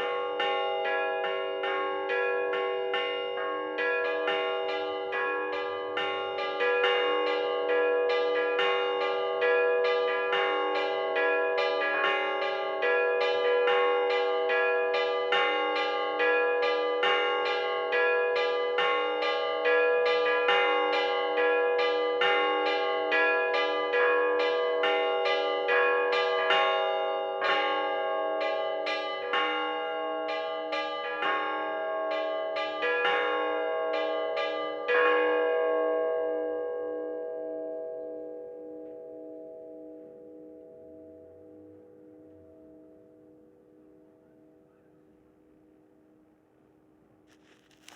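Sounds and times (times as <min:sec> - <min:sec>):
church bells ringing: 0:00.0 - 0:45.8.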